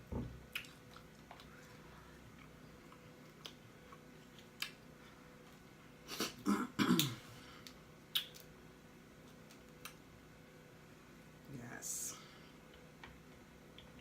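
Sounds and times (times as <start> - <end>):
lip-smacking eating sounds: 0.5 - 6.4, 7.0 - 8.6, 9.2 - 10.0.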